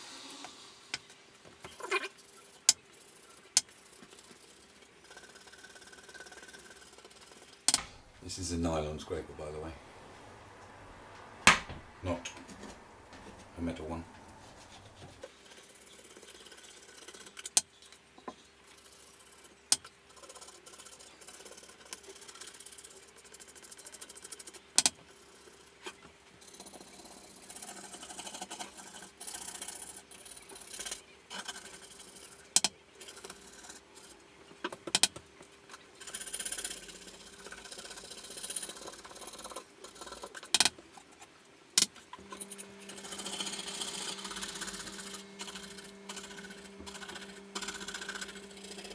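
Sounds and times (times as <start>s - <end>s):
scraper scraping varnish off wood: 0.0s - 7.7s, 42.1s - 48.9s
faint steady hum: 0.0s - 48.9s
scraper clicking against wood: 15.5s - 48.9s.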